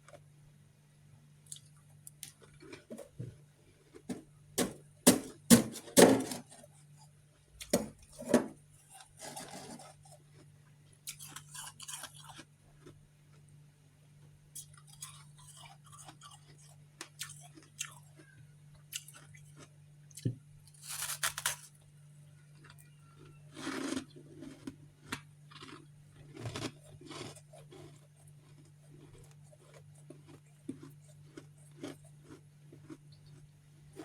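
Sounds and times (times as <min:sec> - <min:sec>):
crunching and chewing of ice: 0:01.4 - 0:13.6, 0:14.2 - 0:34.0.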